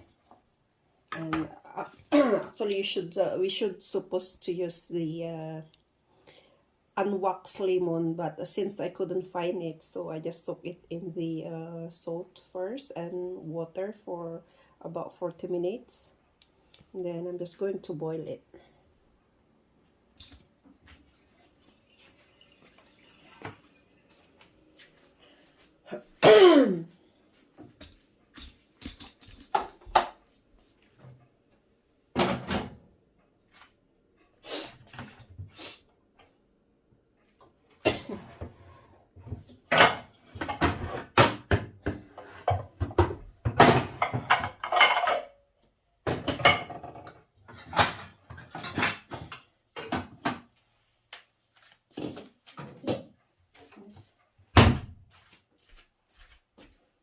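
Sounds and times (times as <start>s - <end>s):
pot and utensils clattering: 39.7s - 45.4s, 46.1s - 50.3s.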